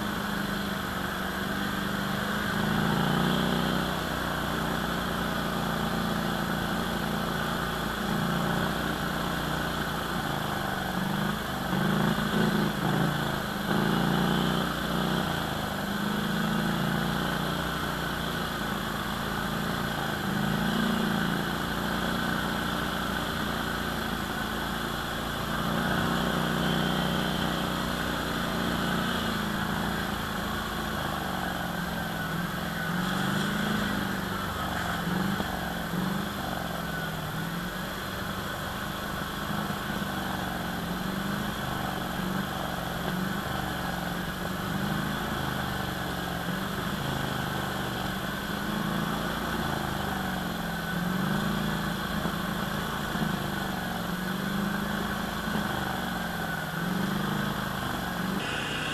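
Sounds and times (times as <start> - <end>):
quad bike engine revving: 0.0 - 58.9.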